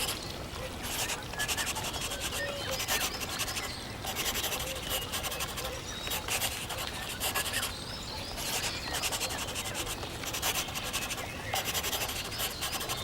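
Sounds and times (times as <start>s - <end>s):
marker scratching on paper: 0.8s - 7.7s, 8.4s - 13.0s.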